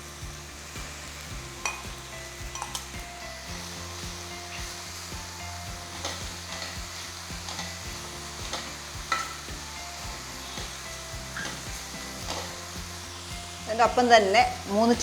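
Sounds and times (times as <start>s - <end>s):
vegetables sizzling in a pan: 0.0s - 15.0s
spoon clicking against pan: 2.5s - 2.9s.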